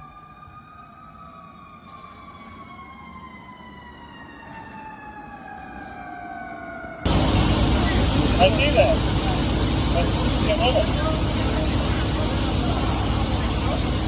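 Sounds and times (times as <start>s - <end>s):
fire engine siren winding down: 0.0s - 14.0s
low vehicle rumble: 7.1s - 14.0s.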